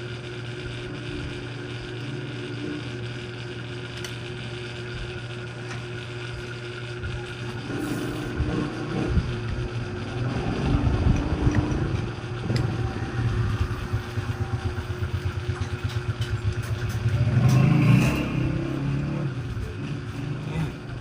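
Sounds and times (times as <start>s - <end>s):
motorcycle engine running: 6.2s - 21.0s.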